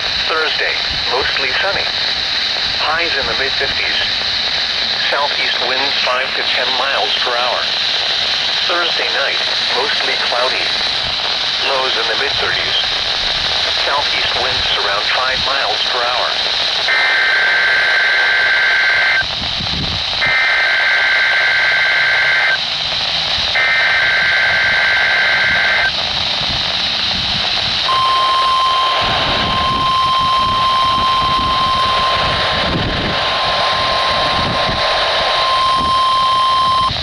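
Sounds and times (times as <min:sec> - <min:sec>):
radio static hiss: 0:00.0 - 0:37.0
warbling data tones: 0:13.8 - 0:19.3, 0:20.1 - 0:22.7, 0:23.5 - 0:26.0, 0:27.4 - 0:37.0
steady warning alarm tone: 0:16.5 - 0:19.3, 0:20.2 - 0:22.6, 0:23.5 - 0:26.0, 0:27.8 - 0:32.9, 0:35.3 - 0:37.0.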